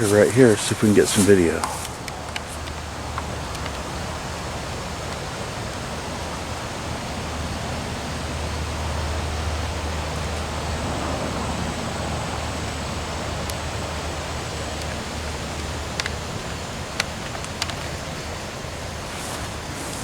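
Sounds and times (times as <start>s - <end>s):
steady rain hiss: 0.0s - 20.0s.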